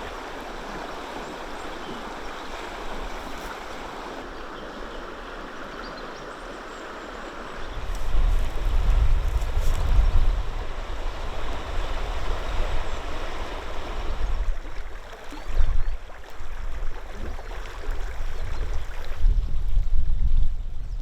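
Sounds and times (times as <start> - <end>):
rushing river water: 0.0 - 19.3
wind buffeting microphone: 7.6 - 21.0.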